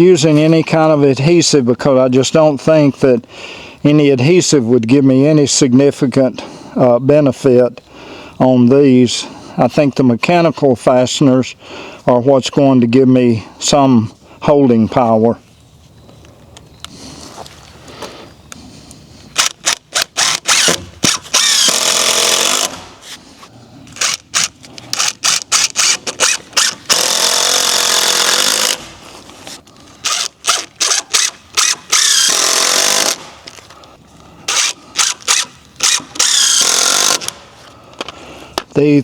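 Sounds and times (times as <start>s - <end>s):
power drill driving screws: 19.4s - 22.9s, 23.9s - 28.8s, 30.0s - 33.3s, 34.5s - 37.4s.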